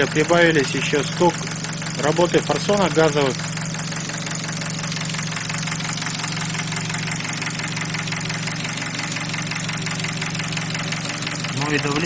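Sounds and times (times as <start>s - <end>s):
car engine idling: 0.0s - 12.0s
fast engine knock: 0.0s - 12.0s
gas injectors ticking: 0.0s - 12.0s.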